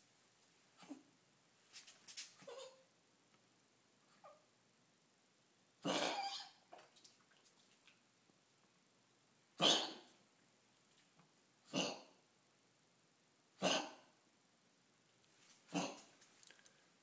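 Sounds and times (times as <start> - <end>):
dog coughing harshly: 5.8 - 6.6, 9.6 - 10.1, 11.7 - 12.1, 13.6 - 14.1, 15.7 - 16.1.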